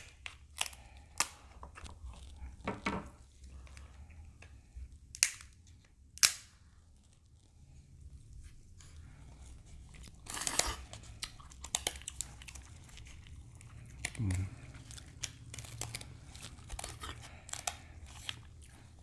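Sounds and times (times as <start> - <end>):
crab shells cracking: 0.0 - 1.9, 5.1 - 6.6, 10.1 - 18.6
shell crunching and snapping: 0.0 - 1.9, 5.1 - 6.6, 10.2 - 13.2, 13.8 - 18.6.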